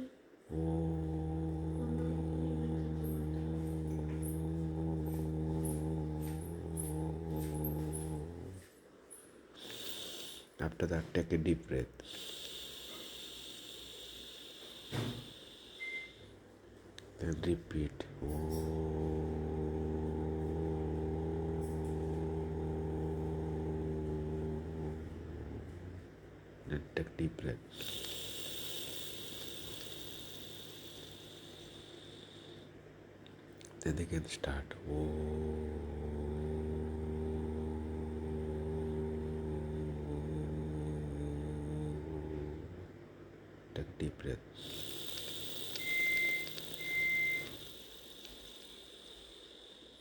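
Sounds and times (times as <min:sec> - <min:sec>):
person humming low note: 0:00.0 - 0:08.7, 0:17.2 - 0:32.6, 0:33.8 - 0:43.2, 0:43.8 - 0:50.0.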